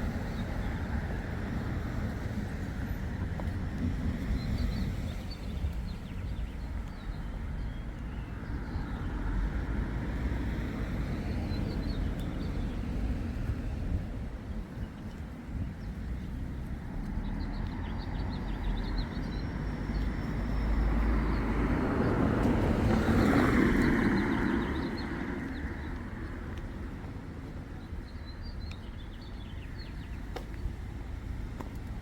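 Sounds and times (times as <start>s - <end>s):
small birds chirping: 4.2s - 9.8s, 10.6s - 21.6s, 23.0s - 32.0s.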